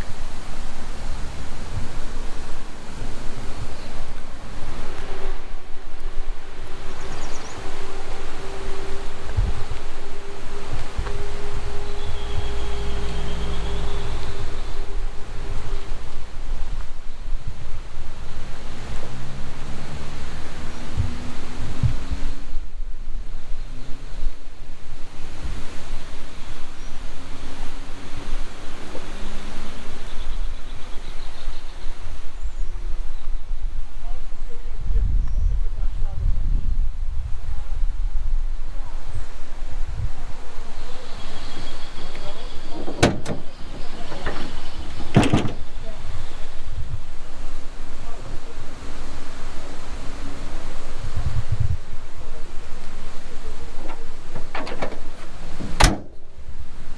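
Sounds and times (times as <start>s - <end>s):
truck engine running: 0.0s - 22.5s, 41.0s - 48.8s, 52.2s - 56.8s
road and wind noise: 0.0s - 56.9s
low thump: 54.4s - 56.3s.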